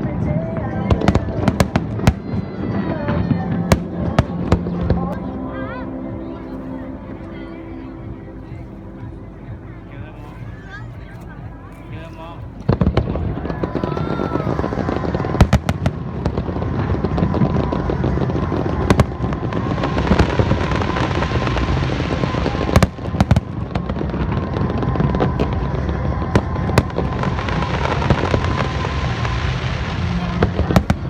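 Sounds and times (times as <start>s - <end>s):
fireworks rumble and crackle: 0.0s - 5.2s, 8.6s - 31.0s
fireworks sharp bangs: 0.9s - 5.2s, 12.7s - 31.0s.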